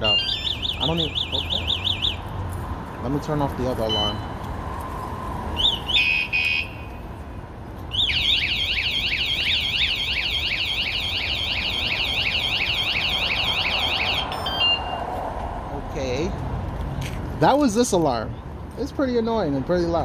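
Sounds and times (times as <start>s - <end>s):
short electronic beeps: 0.0s - 2.2s, 3.8s - 4.4s, 12.0s - 15.0s
bicycle alarm siren warbling: 0.0s - 2.3s, 5.6s - 6.8s, 7.9s - 15.0s.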